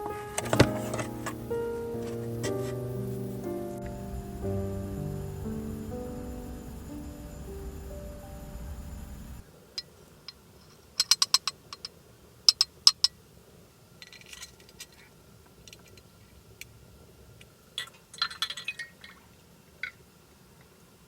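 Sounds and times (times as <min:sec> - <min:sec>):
small hard objects clinking: 0:17.8 - 0:19.2.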